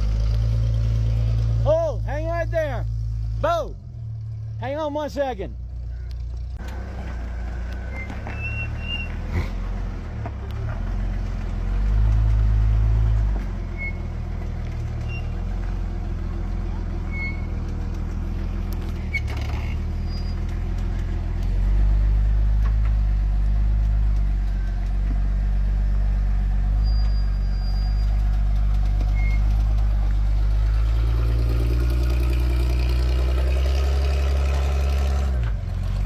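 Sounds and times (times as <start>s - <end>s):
truck engine running at low revs: 0.0s - 36.0s.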